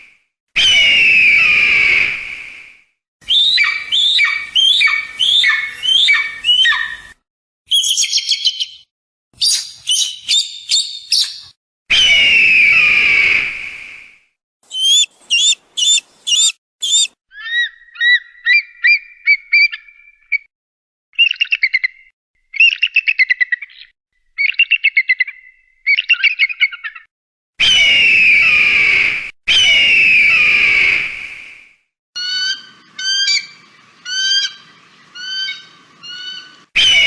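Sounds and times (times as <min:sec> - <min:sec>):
eagle whistles: 0:00.6 - 0:08.5, 0:12.0 - 0:17.2, 0:27.6 - 0:32.4
eagle chattering trills: 0:14.7 - 0:17.1
eagle piping notes: 0:14.7 - 0:17.1
eagle harsh screams: 0:14.7 - 0:17.5.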